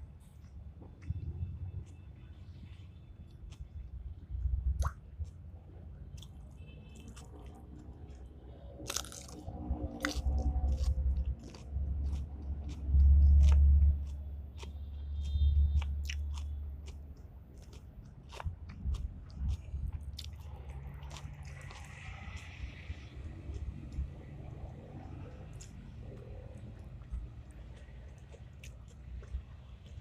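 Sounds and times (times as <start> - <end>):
crunching and sharp clicks: 6.1 - 24.1, 25.2 - 30.0.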